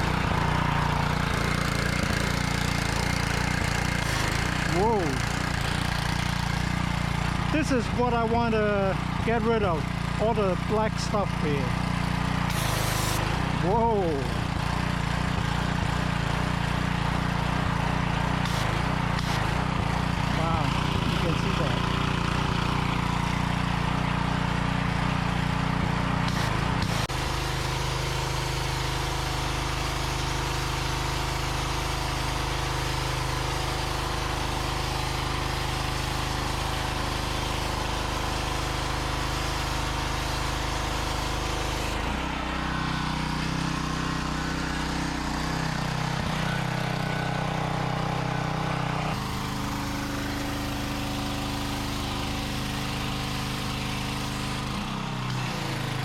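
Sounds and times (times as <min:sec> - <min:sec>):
spray hissing on concrete: 0:00.0 - 0:08.1, 0:11.0 - 0:24.4, 0:26.2 - 0:56.0
pressure washer engine running: 0:00.0 - 0:56.0.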